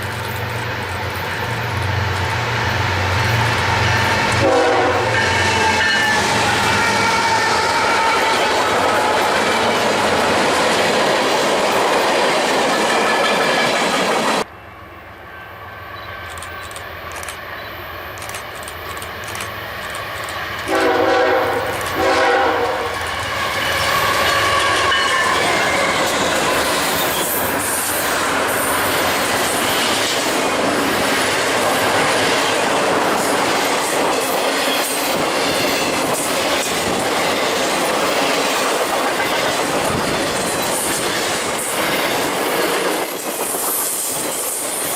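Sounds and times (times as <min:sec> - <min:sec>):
train wheels clickety-clack: 0:00.0 - 0:14.5, 0:23.6 - 0:44.9
loud train noise: 0:00.0 - 0:44.9
train air horn blasts: 0:03.8 - 0:09.3, 0:20.7 - 0:23.0.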